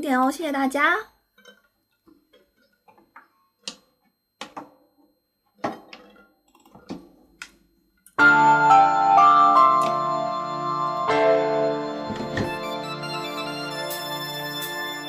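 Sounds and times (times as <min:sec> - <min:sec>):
electronic keyboard chords: 0:08.2 - 0:15.0.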